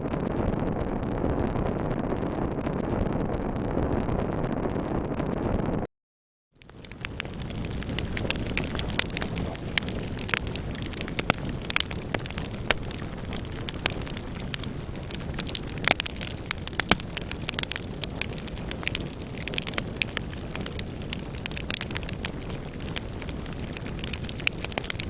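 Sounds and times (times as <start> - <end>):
fire rumbling: 0.0 - 5.5, 6.6 - 25.0
fire crackling and popping: 6.6 - 25.0.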